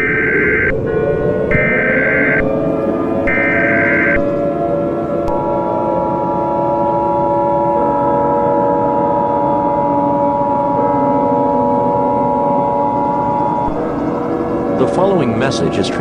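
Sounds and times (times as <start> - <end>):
low droning background: 0.0 - 15.4
two-tone alarm: 0.0 - 16.0.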